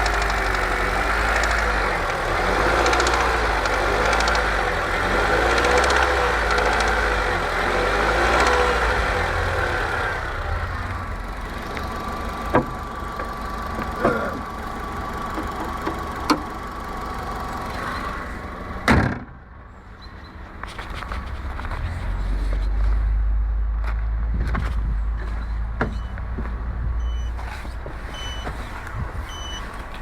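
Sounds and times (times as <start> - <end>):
sharp clicks: 0.0 - 2.2
car engine running: 0.0 - 30.0
loud thump: 18.9 - 19.4.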